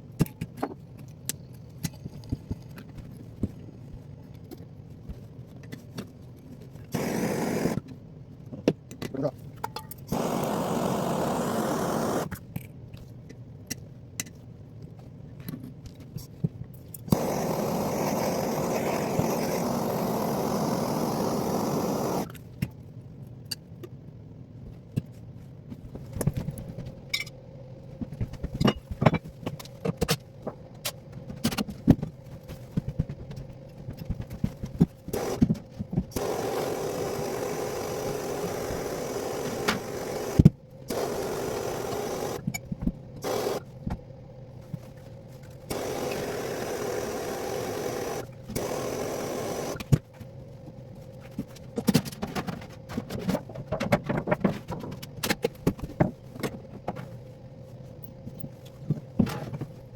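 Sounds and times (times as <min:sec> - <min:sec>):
motor-driven tool running: 0:06.9 - 0:07.8, 0:10.1 - 0:12.3, 0:17.1 - 0:22.3, 0:35.1 - 0:42.6, 0:43.2 - 0:43.8, 0:45.7 - 0:50.0.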